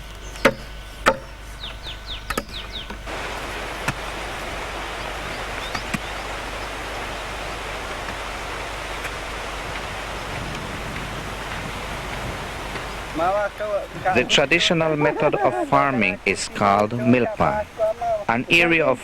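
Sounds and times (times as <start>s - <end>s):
bird chirps: 0.0s - 18.8s
steady rushing hiss: 0.0s - 19.0s
chopping blows on wood: 0.4s - 1.3s, 9.0s - 12.9s.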